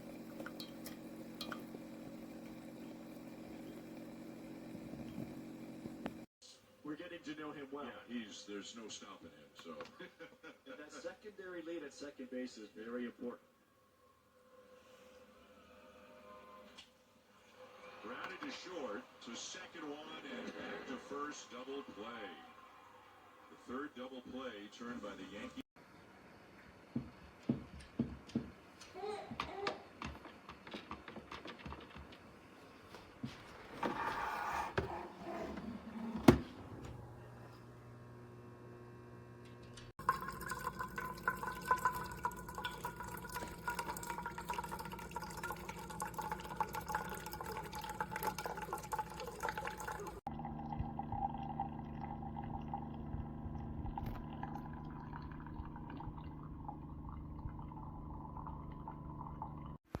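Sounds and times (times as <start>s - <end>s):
coffee maker pump humming: 0.0s - 6.3s, 33.2s - 59.8s
liquid pouring into a cup: 0.0s - 6.3s, 40.0s - 59.8s.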